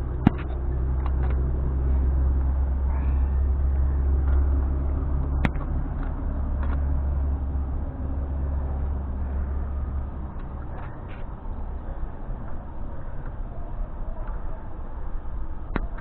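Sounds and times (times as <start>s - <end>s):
vehicle engine running: 0.0s - 16.0s.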